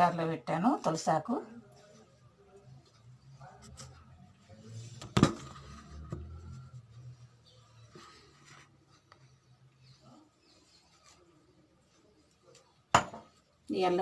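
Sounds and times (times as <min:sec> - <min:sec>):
hard object set down on counter: 0:13.0 - 0:13.3.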